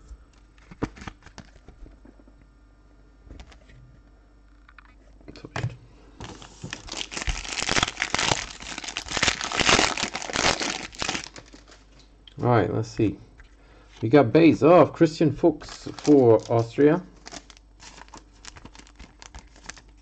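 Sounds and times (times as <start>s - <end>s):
plastic wrapper crinkling and tearing: 6.2s - 12.0s, 15.6s - 20.0s.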